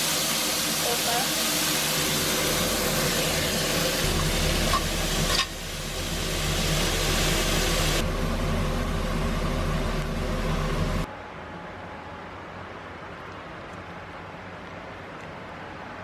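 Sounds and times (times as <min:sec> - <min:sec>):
cooking hiss: 0:00.0 - 0:11.1
low fan-like hum: 0:02.0 - 0:16.0.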